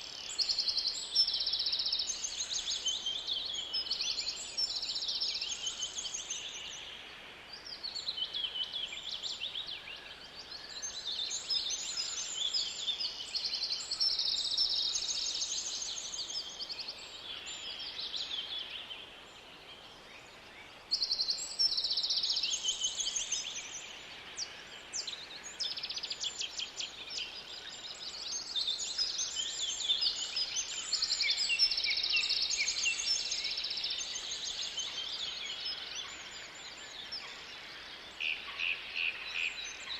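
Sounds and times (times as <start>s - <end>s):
songbirds trilling and chirping: 0.0s - 39.9s.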